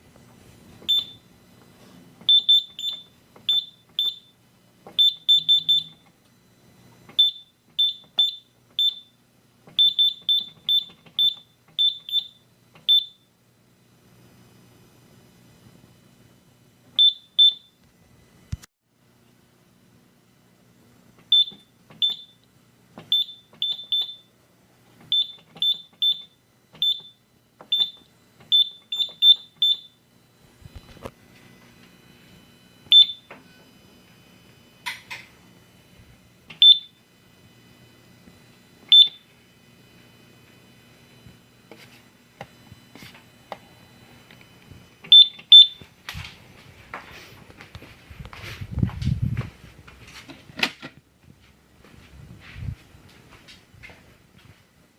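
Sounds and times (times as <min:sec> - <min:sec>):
short high key-press beeps: 0:00.9 - 0:01.2, 0:02.3 - 0:04.3, 0:05.0 - 0:06.0, 0:07.2 - 0:09.1, 0:09.8 - 0:13.2, 0:21.3 - 0:22.4, 0:23.1 - 0:24.3, 0:25.1 - 0:30.0, 0:32.9 - 0:33.3, 0:36.5 - 0:36.9, 0:38.9 - 0:39.2, 0:45.1 - 0:45.8.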